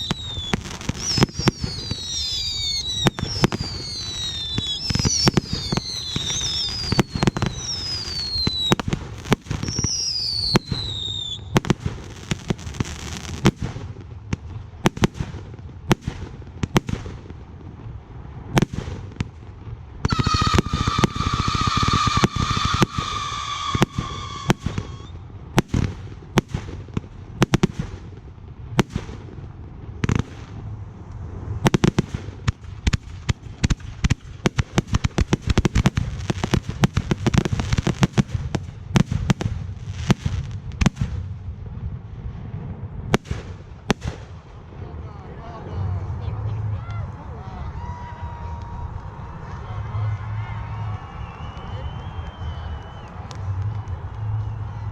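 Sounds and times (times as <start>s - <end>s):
long multi-tone whistle: 0.0s - 8.8s, 9.6s - 11.5s, 20.1s - 25.2s, 49.4s - 54.9s
falling firework whistles: 0.0s - 13.5s, 20.0s - 25.2s, 47.9s - 54.9s
firework bangs and crackling: 0.0s - 54.9s.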